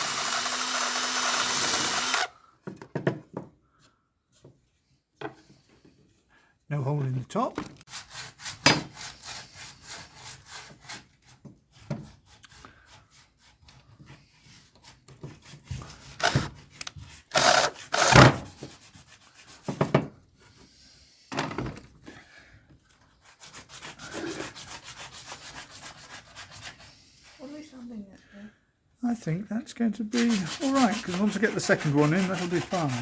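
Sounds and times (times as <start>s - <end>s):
rubbing and scraping wood: 7.9s - 20.8s, 22.9s - 27.5s, 30.1s - 33.0s.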